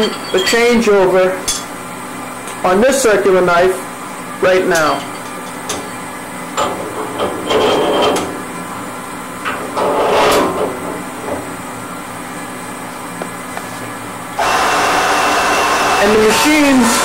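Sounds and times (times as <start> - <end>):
machine hum: 6.0 - 17.0
metal knocks and scraping: 6.6 - 8.5, 9.4 - 11.6.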